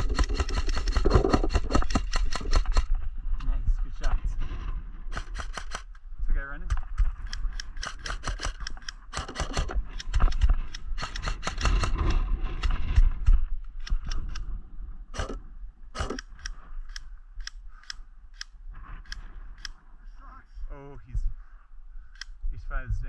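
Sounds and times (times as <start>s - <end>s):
airsoft guns firing: 5.1s - 5.9s, 7.7s - 12.1s, 15.2s - 16.3s.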